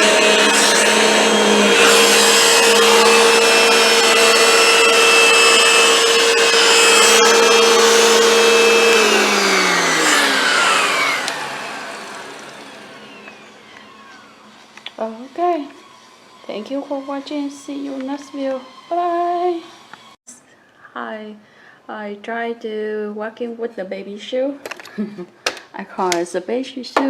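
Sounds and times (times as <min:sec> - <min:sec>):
vacuum cleaner motor whine: 0:00.0 - 0:20.2.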